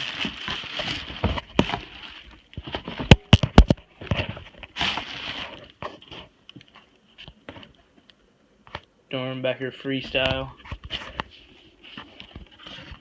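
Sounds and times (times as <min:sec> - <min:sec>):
cardboard and paper rustling: 0:00.0 - 0:06.9, 0:10.1 - 0:13.0.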